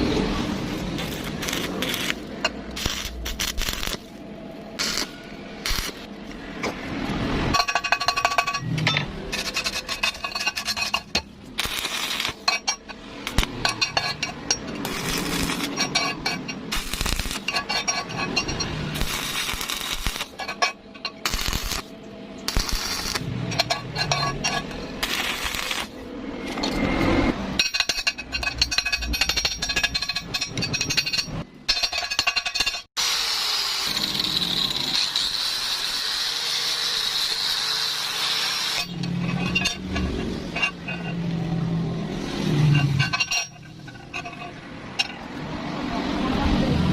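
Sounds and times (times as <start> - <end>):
metal parts clinking and tapping: 7.5 - 21.8, 23.5 - 25.9, 27.6 - 32.9, 38.8 - 41.3, 42.7 - 45.3.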